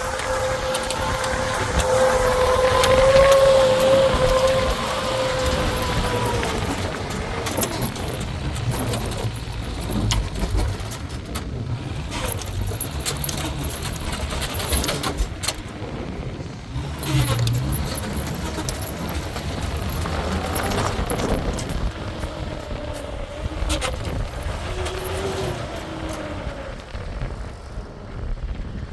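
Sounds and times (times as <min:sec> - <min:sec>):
clinks and knocks: 0:00.0 - 0:15.8, 0:16.8 - 0:22.3
vehicle engine rumbling: 0:00.0 - 0:28.9.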